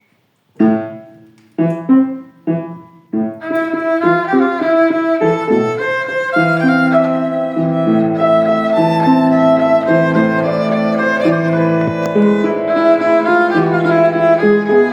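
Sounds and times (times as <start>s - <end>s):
accented chords: 3.4s - 14.9s
bowed violin melody: 3.4s - 14.9s
held lower notes: 3.4s - 14.9s.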